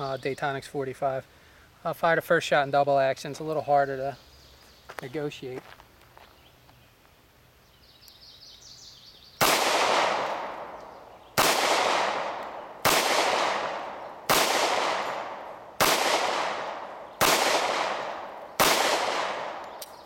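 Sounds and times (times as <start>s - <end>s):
pistol shots with echo: 9.4s - 20.0s.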